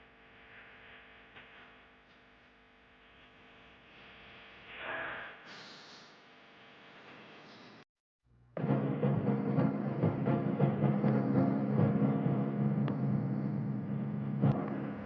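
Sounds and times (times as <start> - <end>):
faint hiss: 0.0 - 6.3.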